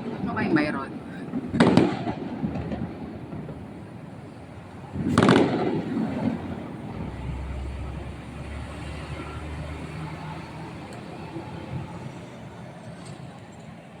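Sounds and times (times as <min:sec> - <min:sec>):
firework bang: 0:00.0 - 0:08.5
low rumble: 0:00.9 - 0:10.0.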